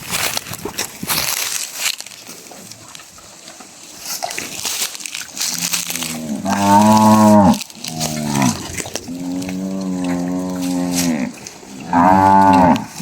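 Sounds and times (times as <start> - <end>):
light crunching: 0.0 - 13.0
cow mooing: 5.6 - 13.0.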